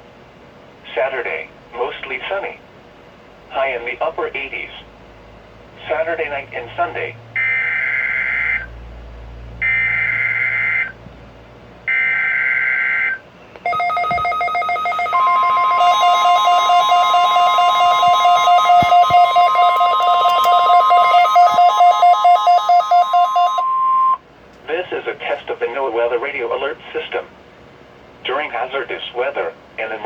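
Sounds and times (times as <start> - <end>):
steady warning tone: 13.6 - 24.2
screechy digital header tones: 13.7 - 23.8
pulsing warbling electronic alarm: 13.7 - 24.2.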